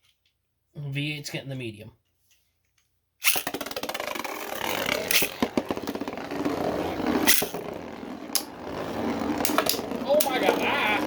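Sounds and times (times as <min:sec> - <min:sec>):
spinning tops colliding: 0:03.2 - 0:11.0
spinning tops whirring and rattling: 0:03.2 - 0:11.0.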